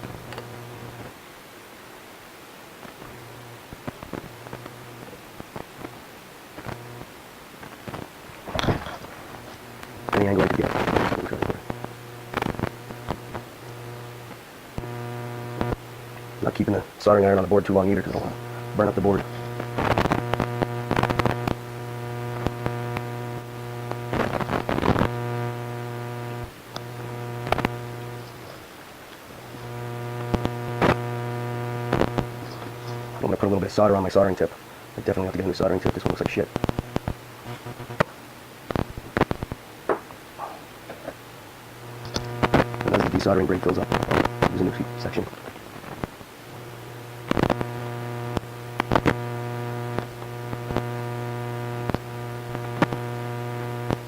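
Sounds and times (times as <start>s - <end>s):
buzzy mains hum: 0.0s - 54.0s
sharp clicks: 42.0s - 44.6s.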